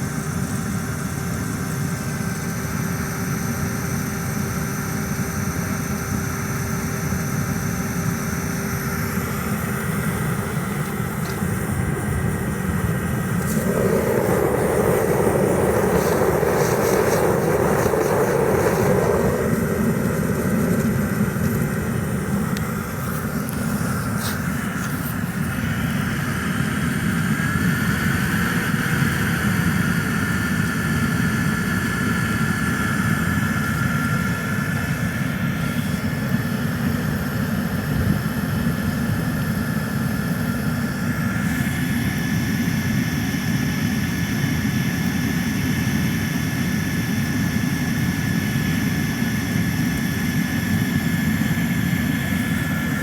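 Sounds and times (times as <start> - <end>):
high motor whine: 0.0 - 53.0
burner roar: 9.2 - 25.6.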